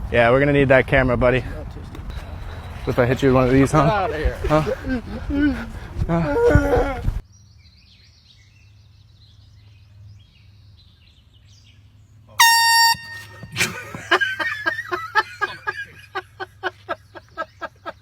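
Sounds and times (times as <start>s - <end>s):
person laughing hard: 3.8s - 7.2s, 13.5s - 18.0s
air horn blast: 12.4s - 13.9s.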